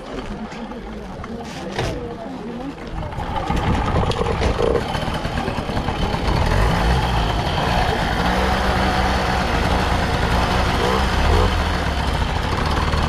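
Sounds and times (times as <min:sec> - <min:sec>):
vehicle engine running: 0:02.7 - 0:13.0.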